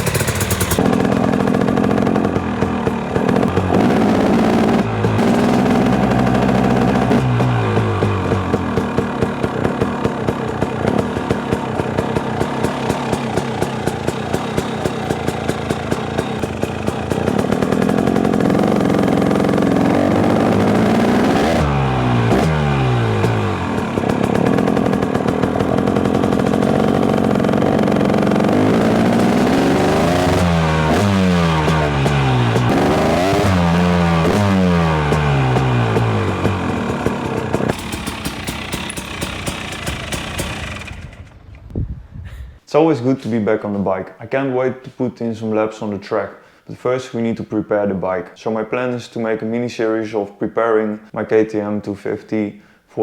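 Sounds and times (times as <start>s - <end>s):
two-stroke dirt bike engine revving: 0.0s - 41.7s.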